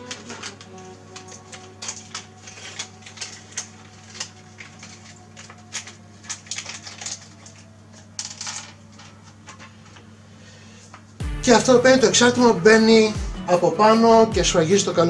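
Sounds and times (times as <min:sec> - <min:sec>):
plastic parts clicking and tapping: 0:00.0 - 0:10.0.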